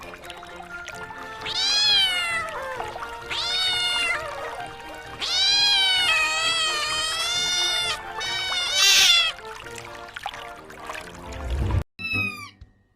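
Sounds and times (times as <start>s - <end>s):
soft background music: 0.0s - 12.9s
cat meowing: 1.4s - 9.4s.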